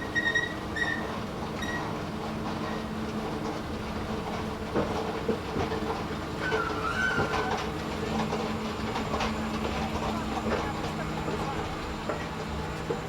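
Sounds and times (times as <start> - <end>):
escalator humming and rattling: 0.0 - 13.0
brief squeal: 0.1 - 1.8, 6.4 - 7.5.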